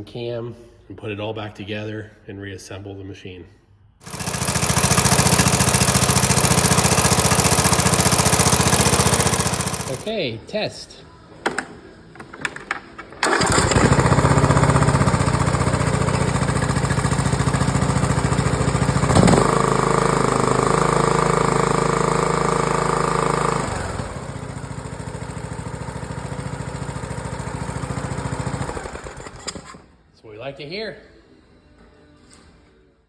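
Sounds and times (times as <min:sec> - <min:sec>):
lawn mower engine running: 0:04.0 - 0:10.1, 0:13.2 - 0:29.8
engine click: 0:13.1 - 0:14.5.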